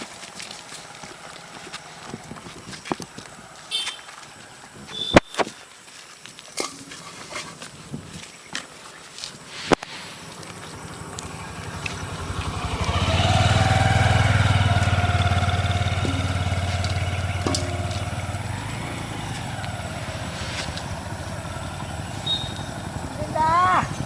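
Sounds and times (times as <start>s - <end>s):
small vehicle engine passing by: 10.1s - 24.0s.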